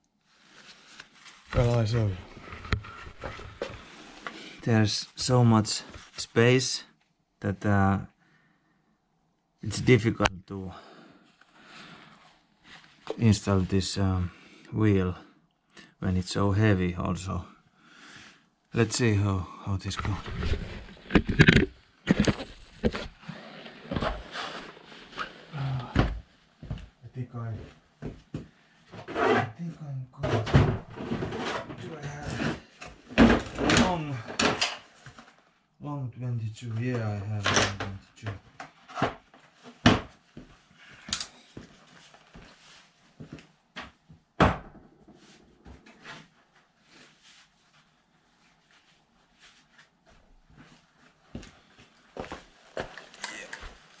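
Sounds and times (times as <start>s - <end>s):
person grunting: 53.2s - 53.6s.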